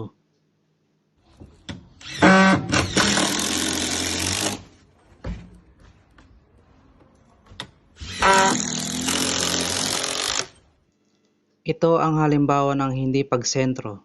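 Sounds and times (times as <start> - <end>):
impact driver hammering: 1.6 - 4.7, 8.0 - 10.6.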